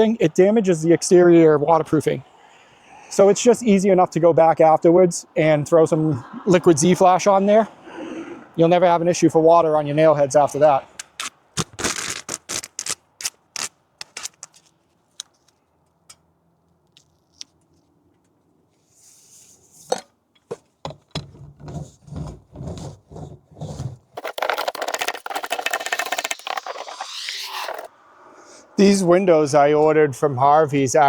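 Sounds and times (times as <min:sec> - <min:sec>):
dense crackling rasp: 0:11.0 - 0:14.7, 0:24.2 - 0:27.9
rubbing and scraping: 0:11.0 - 0:15.6, 0:21.3 - 0:27.9.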